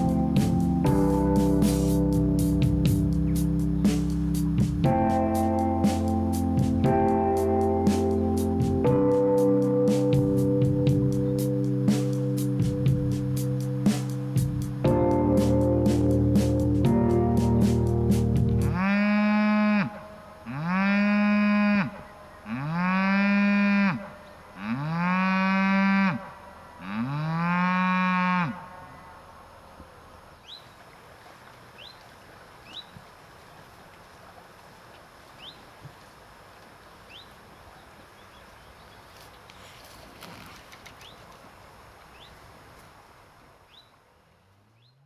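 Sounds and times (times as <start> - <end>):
cow mooing: 18.6 - 29.1.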